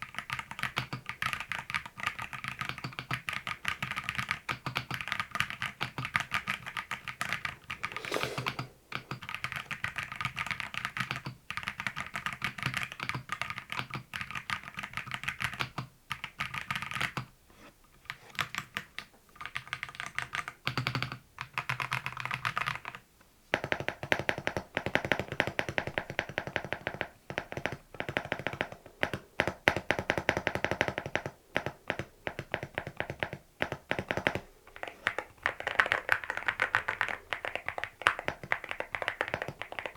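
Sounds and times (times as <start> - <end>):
mechanical keyboard typing: 0.0 - 17.2, 18.4 - 23.0, 23.6 - 39.9.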